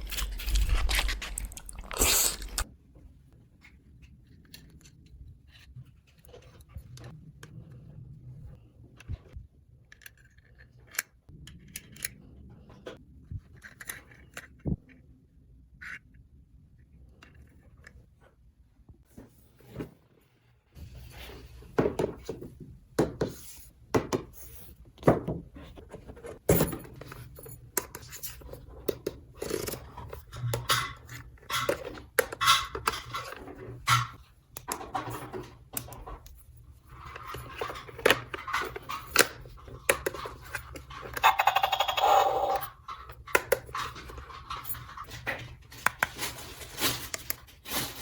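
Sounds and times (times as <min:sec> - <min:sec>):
plastic toy pieces clicking: 0:41.1 - 0:42.7.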